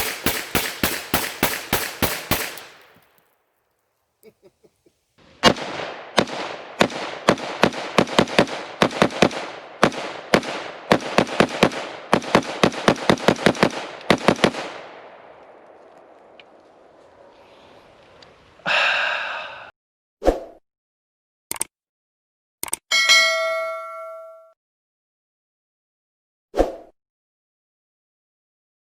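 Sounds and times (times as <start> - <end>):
rapid gunshots echoing: 0.0 - 3.0, 5.4 - 15.5
ringing tone: 22.9 - 24.6.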